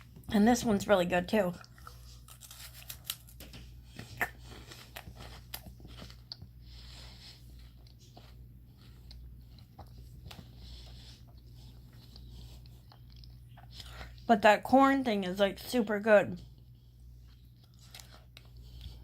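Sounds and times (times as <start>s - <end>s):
crunchy snack being chewed: 1.6s - 14.2s, 17.2s - 19.0s.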